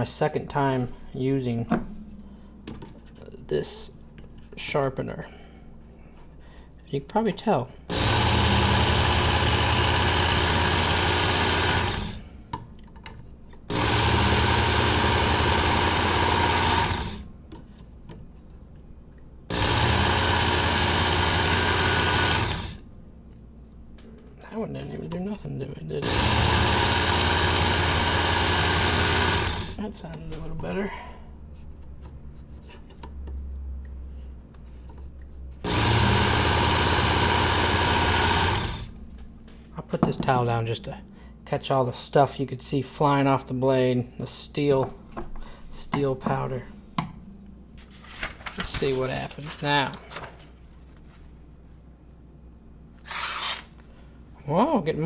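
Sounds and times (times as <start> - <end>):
belt sharpener grinding knife blade: 7.9 - 12.2, 13.7 - 17.3, 19.5 - 22.8, 26.0 - 29.8, 35.7 - 38.9, 53.0 - 53.7.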